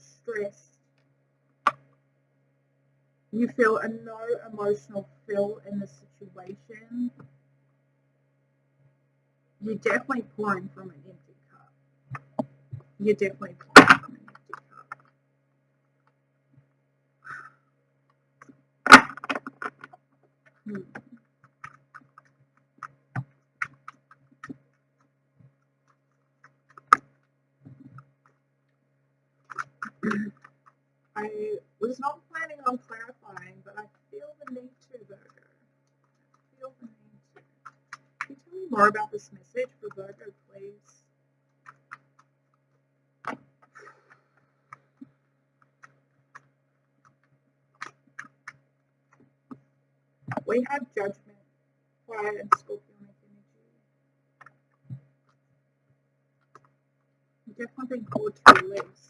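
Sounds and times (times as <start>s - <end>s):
faint low hum: 0.0s - 59.0s.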